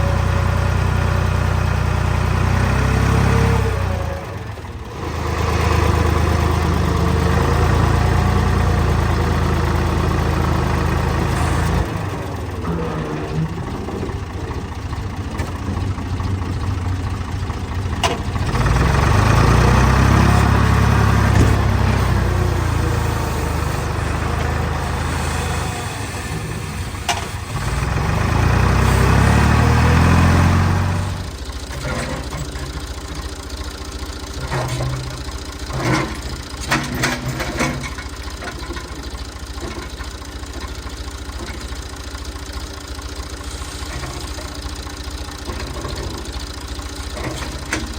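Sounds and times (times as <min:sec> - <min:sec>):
tractor engine revving: 0:00.0 - 0:33.1.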